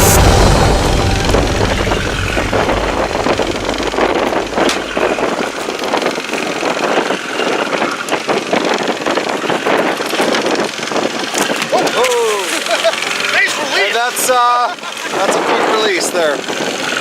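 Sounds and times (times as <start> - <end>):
deep rumble: 0.0 - 6.8
wind noise: 0.0 - 12.2, 15.2 - 17.0
boat motor running: 0.0 - 17.0.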